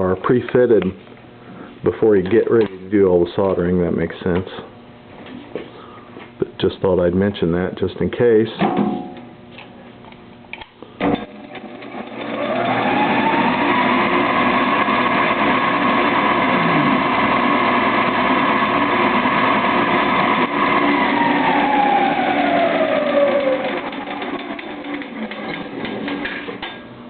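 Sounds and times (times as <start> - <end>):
electric drill motor whine: 11.2 - 26.2.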